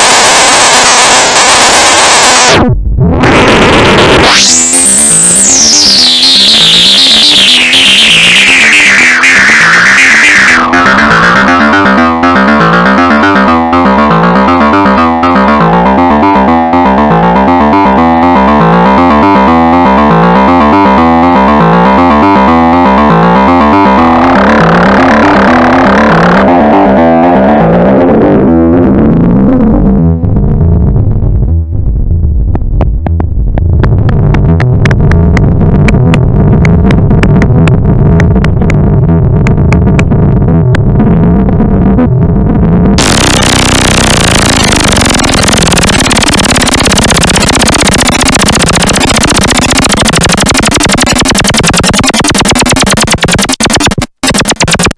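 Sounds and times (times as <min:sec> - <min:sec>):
low bass drone: 0:02.6 - 0:53.3
synthesizer sequenced pattern: 0:04.2 - 0:25.8, 0:43.0 - 0:54.9
rapid high ticks: 0:04.6 - 0:13.5, 0:43.0 - 0:54.9.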